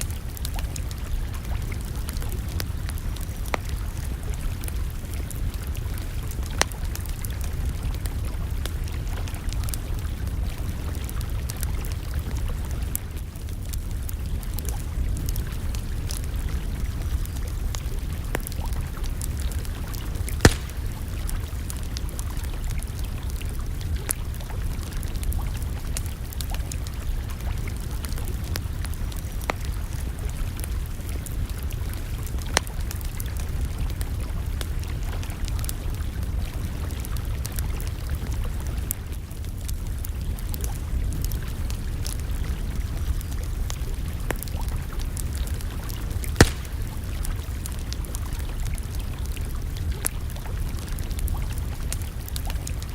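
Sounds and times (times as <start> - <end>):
campfire crackling: 0.0 - 52.9
sharp fire pops: 16.0 - 23.0, 42.0 - 48.3.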